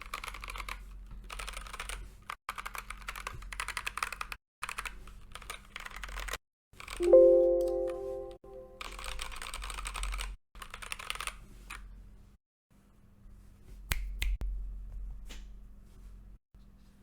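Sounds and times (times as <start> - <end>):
mechanical keyboard typing: 0.0 - 7.2, 9.6 - 11.3.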